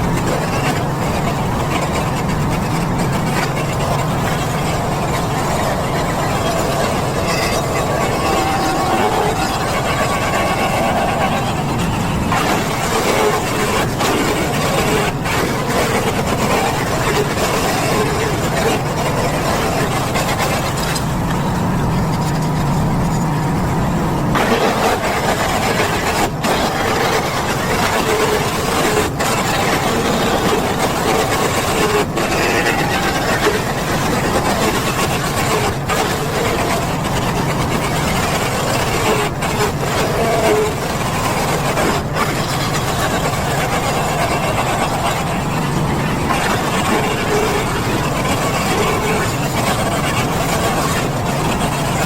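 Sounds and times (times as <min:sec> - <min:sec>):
hissing: 0:00.0 - 0:21.8
small petrol engine running: 0:00.0 - 0:52.0.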